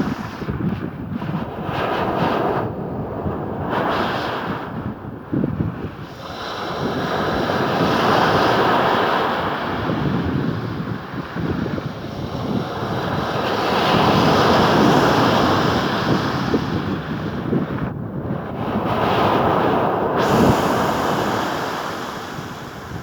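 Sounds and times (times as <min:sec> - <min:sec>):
sea waves breaking: 0:00.0 - 0:00.7, 0:18.6 - 0:23.0
wind buffeting microphone: 0:00.0 - 0:23.0.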